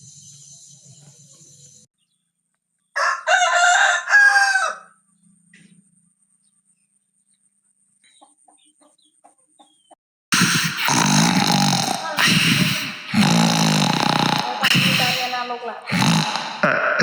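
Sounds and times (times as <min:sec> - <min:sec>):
rooster crowing: 0:03.0 - 0:05.0.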